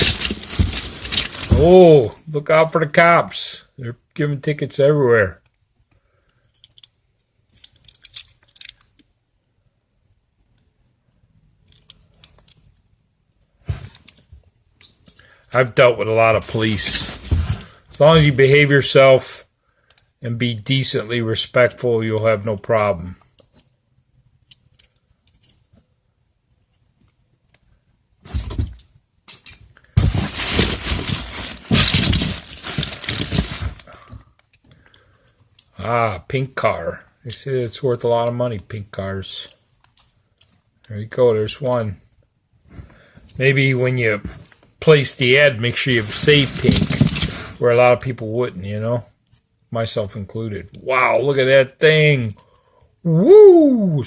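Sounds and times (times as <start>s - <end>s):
packaging rustling: 0.0s - 1.8s, 16.4s - 18.3s, 30.0s - 34.2s, 45.9s - 47.6s.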